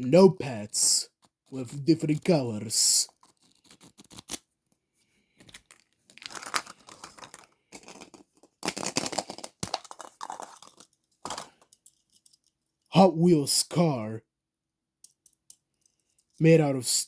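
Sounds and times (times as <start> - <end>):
wrapping torn and crinkled: 3.1 - 4.5, 5.4 - 11.6.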